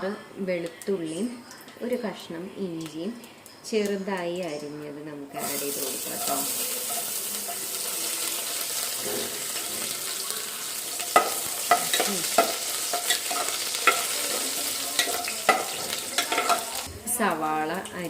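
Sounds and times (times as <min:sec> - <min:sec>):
garlic sizzling in hot oil: 0:05.3 - 0:18.0.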